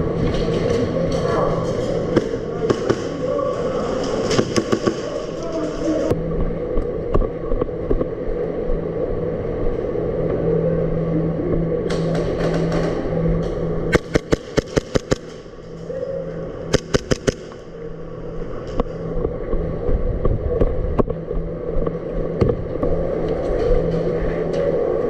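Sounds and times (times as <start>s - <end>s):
airsoft guns firing: 2.1s - 3.4s, 4.1s - 5.4s, 13.9s - 15.5s, 16.7s - 17.8s.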